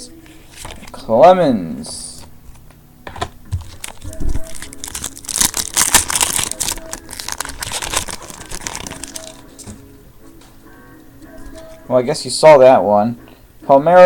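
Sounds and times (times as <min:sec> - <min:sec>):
wrapper tearing and crinkling: 0:03.6 - 0:09.5.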